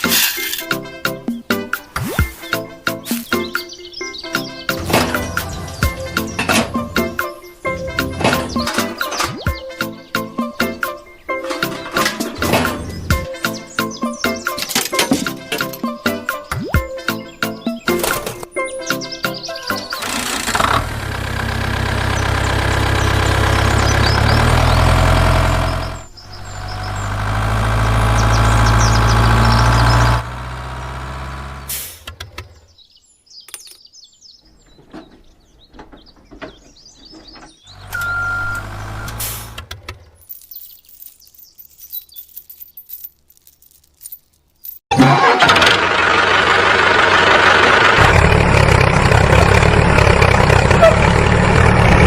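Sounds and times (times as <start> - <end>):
motor humming: 20.0 - 31.7, 37.8 - 39.6.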